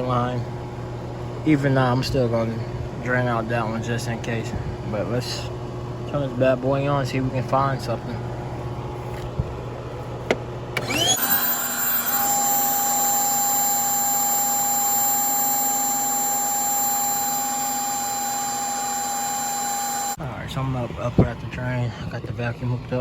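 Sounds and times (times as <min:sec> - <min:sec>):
vacuum motor whining: 0:10.8 - 0:20.2.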